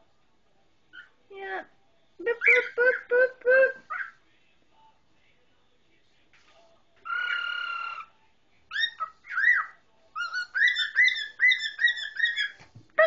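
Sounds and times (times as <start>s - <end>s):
cockatiel whistling and chirping: 8.7s - 12.6s.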